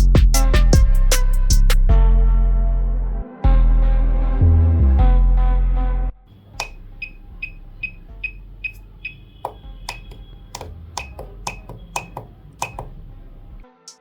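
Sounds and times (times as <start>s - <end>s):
quiet electronic music: 6.3s - 14.0s.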